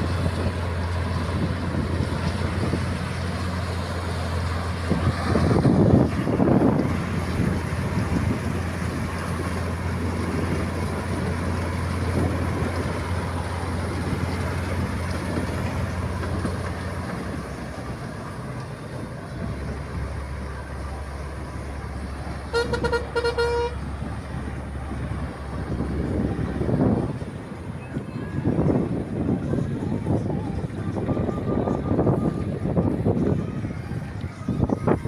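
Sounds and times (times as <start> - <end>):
combine harvester engine hum: 0.0 - 35.0
vehicle horn toots: 22.5 - 23.9.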